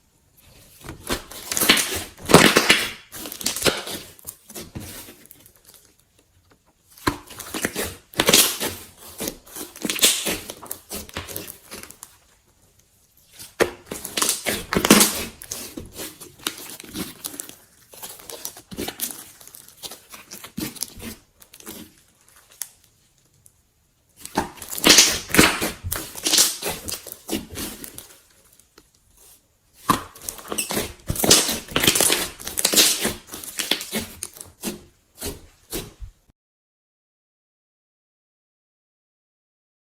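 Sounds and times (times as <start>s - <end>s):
slime squished by hand: 7.0s - 12.0s, 24.2s - 28.2s, 29.8s - 36.0s.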